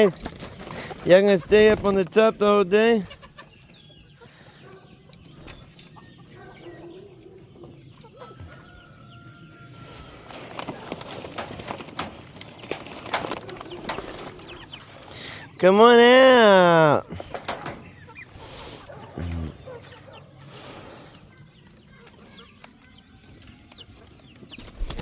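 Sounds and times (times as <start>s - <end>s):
chickens clucking: 0.0s - 25.0s
clicks and rustling: 10.3s - 14.9s, 17.2s - 18.1s.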